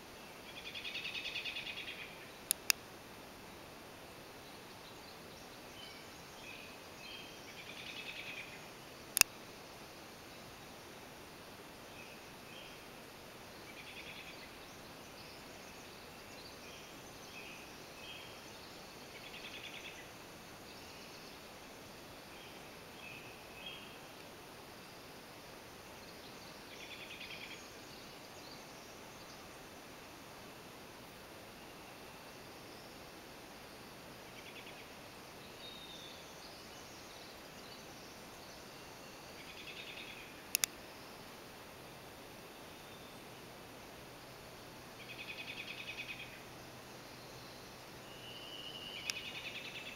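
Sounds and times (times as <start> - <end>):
steady background hiss: 0.0 - 49.9
sharp clicks: 2.5 - 2.8, 40.5 - 40.8
birds singing: 45.0 - 49.9
songbird trills and whistles: 47.1 - 49.9.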